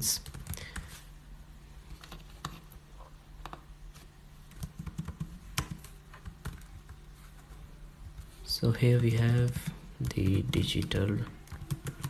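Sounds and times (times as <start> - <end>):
faint low steady hum: 0.0 - 12.0
computer keyboard keystrokes: 0.1 - 0.8, 4.5 - 7.0, 9.3 - 12.0.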